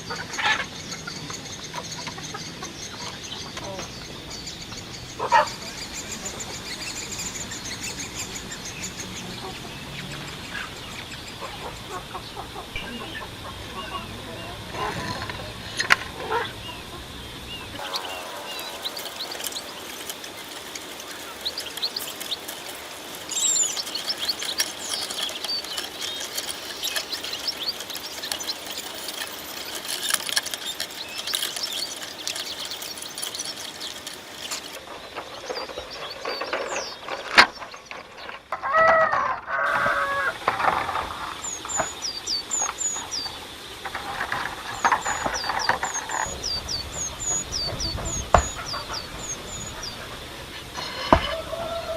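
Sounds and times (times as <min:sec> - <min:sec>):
small birds chirping: 0:00.0 - 0:38.6, 0:39.9 - 0:51.9
chicken clucking: 0:05.1 - 0:06.6, 0:10.4 - 0:22.6, 0:45.0 - 0:51.9.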